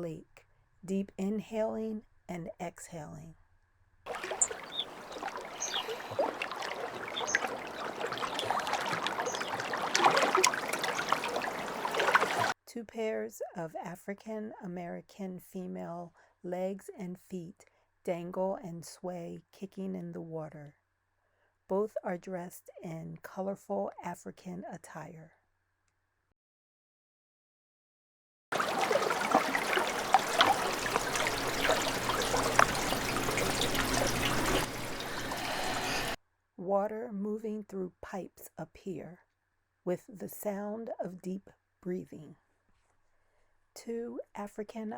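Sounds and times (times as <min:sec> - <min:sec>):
high bird chirps: 0:04.1 - 0:12.5
water lapping and splashing: 0:04.1 - 0:12.6, 0:28.5 - 0:36.2.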